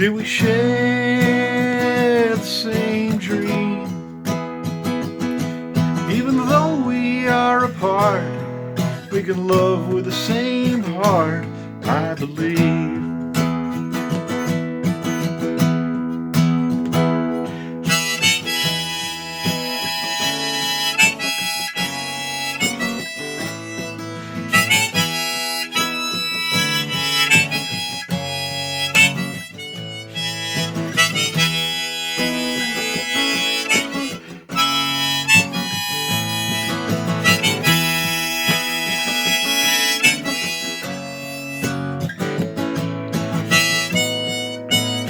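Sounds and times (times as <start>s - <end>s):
harmonica melody: 0.0s - 45.0s
strummed acoustic guitar: 0.0s - 45.0s.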